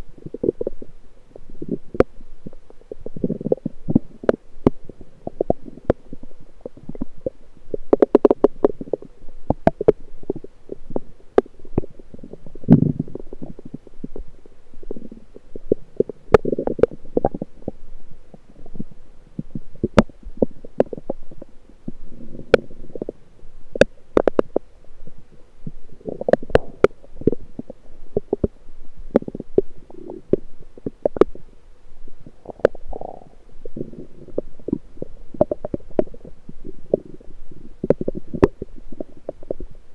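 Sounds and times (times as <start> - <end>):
intestines gurgling and rumbling: 0.0 - 39.9
sharp clicks and pops: 7.8 - 10.4, 23.7 - 24.7.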